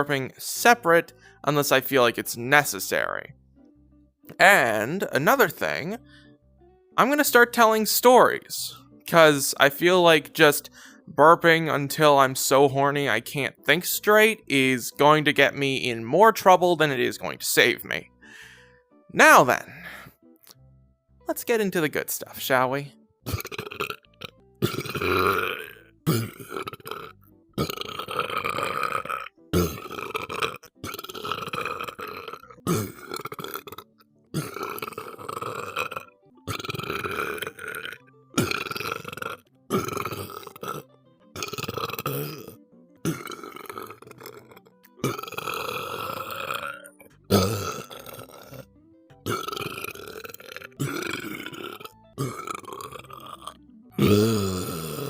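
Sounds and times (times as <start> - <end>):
person burping: 23.2 - 55.0.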